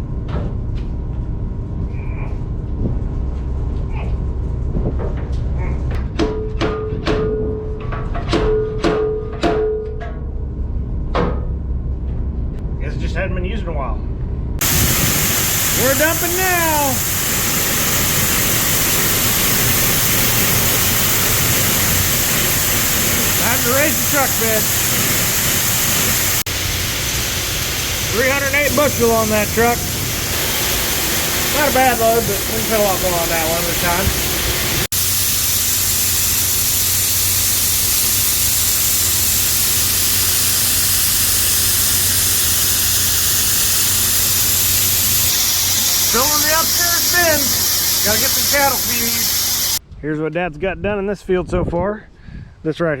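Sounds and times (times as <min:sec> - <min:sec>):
low machinery hum: 0:00.0 - 0:08.2
grain pouring rushing: 0:14.6 - 0:49.8
machinery humming: 0:14.6 - 0:49.8.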